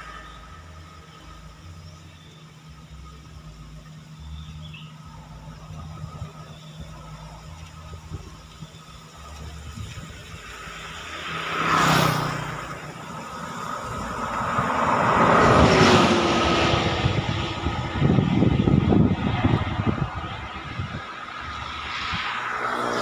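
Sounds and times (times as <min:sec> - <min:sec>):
vehicle rushing past: 0:00.0 - 0:02.3, 0:09.2 - 0:23.0
bus passing by: 0:00.0 - 0:23.0.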